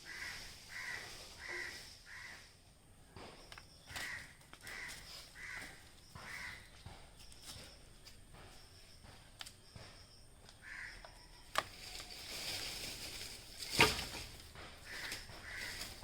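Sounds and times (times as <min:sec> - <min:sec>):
crows cawing: 0:00.0 - 0:02.6, 0:03.8 - 0:06.9, 0:10.6 - 0:11.3, 0:14.8 - 0:16.0.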